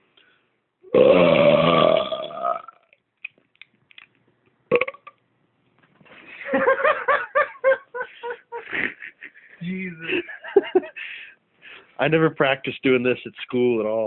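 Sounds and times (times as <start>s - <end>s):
loud gravelly belch: 0.9s - 2.9s, 4.7s - 5.2s.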